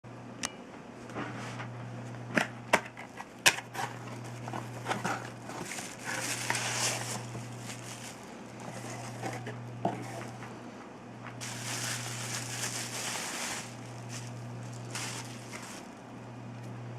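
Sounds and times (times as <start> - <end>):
steady low hum: 0.1 - 16.9
rustling: 4.3 - 10.3, 11.4 - 15.9.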